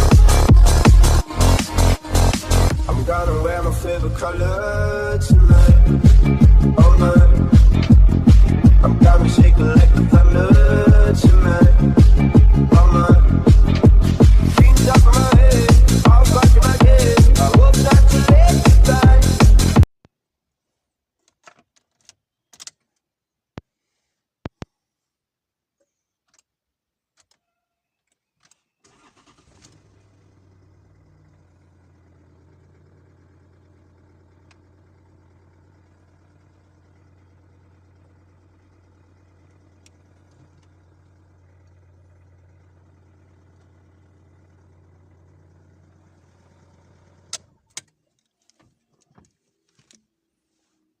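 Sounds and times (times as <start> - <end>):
car engine cranking: 0.0 - 19.9, 28.2 - 50.0
car engine idling: 0.0 - 19.9, 28.9 - 47.8.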